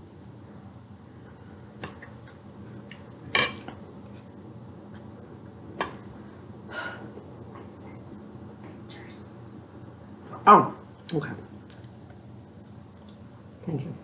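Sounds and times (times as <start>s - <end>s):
faint low hum: 0.0s - 14.0s.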